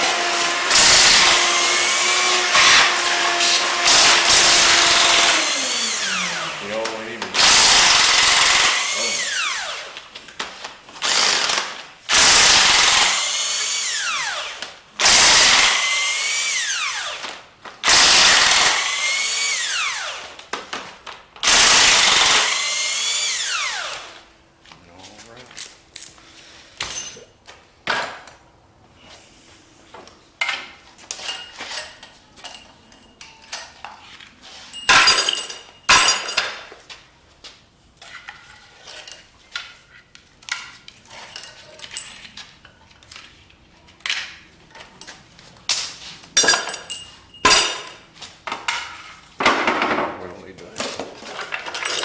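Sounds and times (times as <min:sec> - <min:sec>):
metal tools clinking and clanking: 0:26.8 - 0:27.4, 0:30.4 - 0:34.0, 0:34.7 - 0:36.7, 0:38.0 - 0:43.4, 0:46.4 - 0:49.1, 0:50.8 - 0:52.0.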